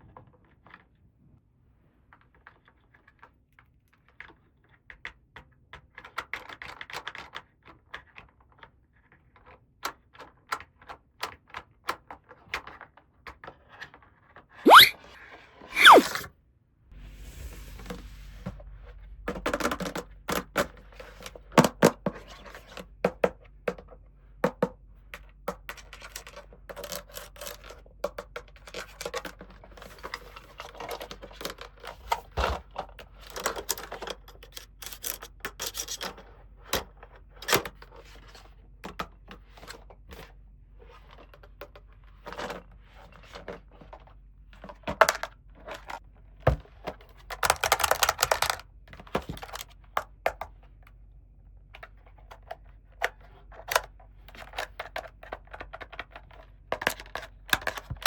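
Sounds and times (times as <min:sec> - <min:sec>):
toy parts clicking: 0:14.7 - 0:14.9, 0:15.8 - 0:16.2.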